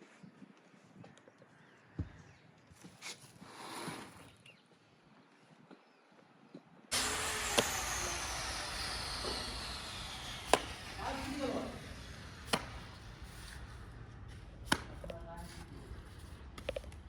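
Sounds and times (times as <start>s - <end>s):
hiss: 6.9s - 14.0s
sharp knocks: 12.5s - 12.8s.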